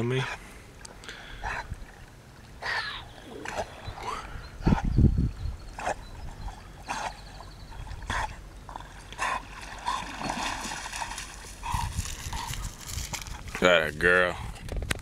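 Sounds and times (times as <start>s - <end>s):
water splashing: 7.9s - 13.5s.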